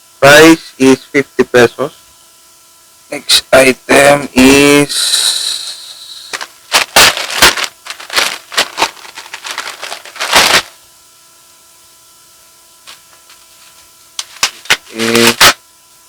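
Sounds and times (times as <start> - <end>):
plastic packaging crinkling: 6.3 - 10.8, 12.9 - 15.4.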